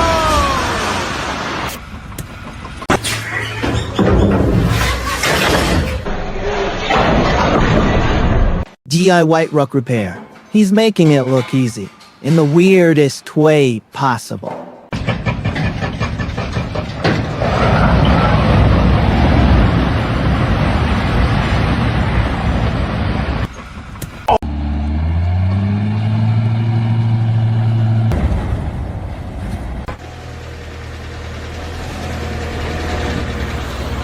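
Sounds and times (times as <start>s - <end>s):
heavy truck engines running: 0.0s - 6.1s, 14.9s - 34.0s
truck engine revving: 15.0s - 34.0s.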